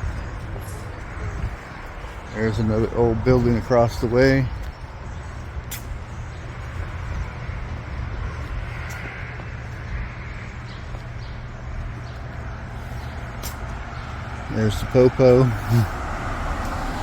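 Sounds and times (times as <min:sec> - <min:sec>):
street traffic rumble: 0:00.0 - 0:17.0
vehicle passing: 0:00.0 - 0:17.0.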